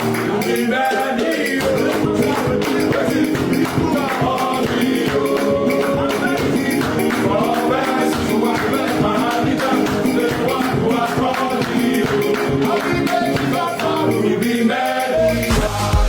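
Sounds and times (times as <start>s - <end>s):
busy percussion: 0.0s - 16.0s
voices singing gospel: 0.0s - 16.0s.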